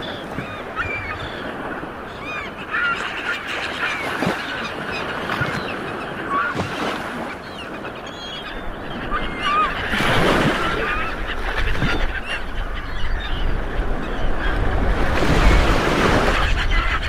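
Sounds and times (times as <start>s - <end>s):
sea water sloshing: 2.5s - 7.7s.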